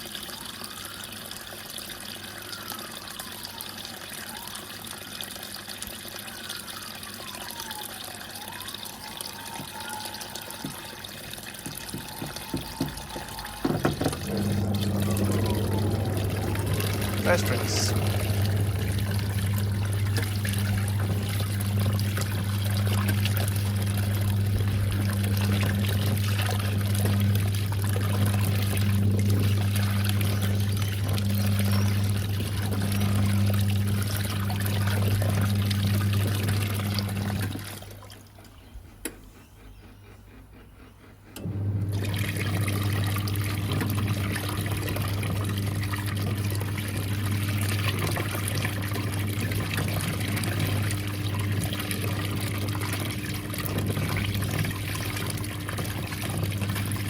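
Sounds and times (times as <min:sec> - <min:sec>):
water pouring into tub: 0:00.0 - 0:38.5, 0:41.8 - 0:57.0
low electrical hum: 0:13.3 - 0:38.5
higher hum: 0:13.4 - 0:25.2.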